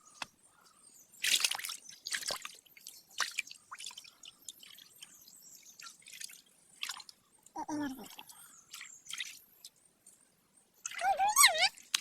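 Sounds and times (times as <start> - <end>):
water dripping: 1.2 - 10.2.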